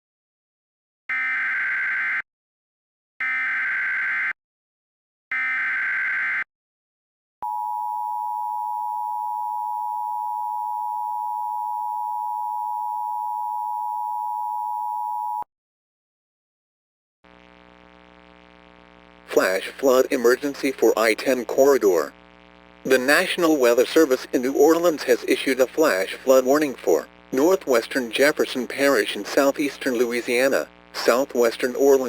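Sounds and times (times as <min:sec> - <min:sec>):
steady attention tone: 0:19.3 - 0:22.2, 0:22.9 - 0:32.0.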